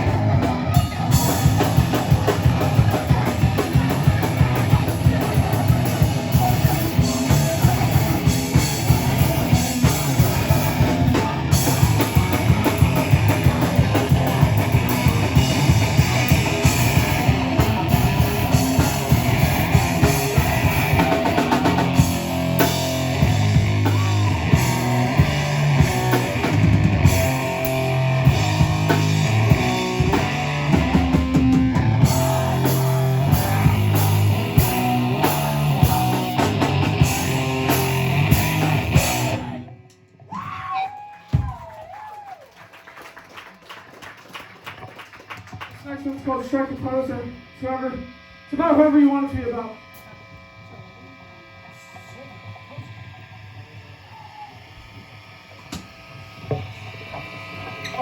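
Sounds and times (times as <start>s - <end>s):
live heavy rock band: 0.0s - 41.7s.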